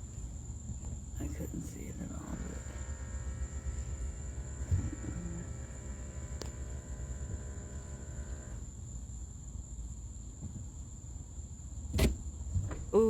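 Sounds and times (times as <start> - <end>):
high insect drone: 0.0 - 11.9
hum of steady tones: 1.2 - 8.7.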